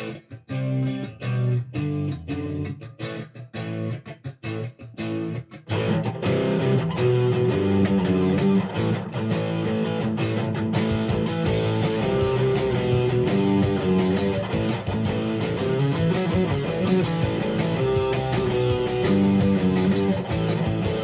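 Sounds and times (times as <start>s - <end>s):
guitar chords: 0.0s - 21.0s
full band backing: 10.9s - 21.0s.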